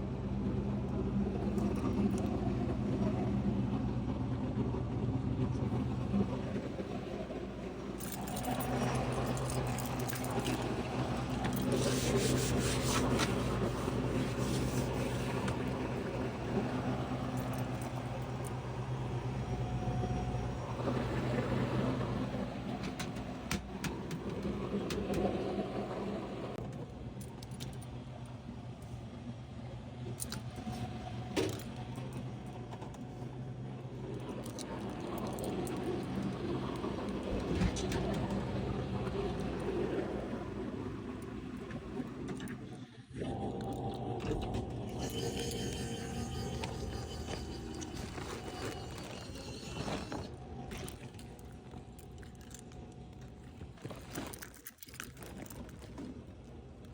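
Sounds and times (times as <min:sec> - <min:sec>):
low mechanical hum: 0:00.0 - 0:56.9
rustling and clinking: 0:45.0 - 0:56.1.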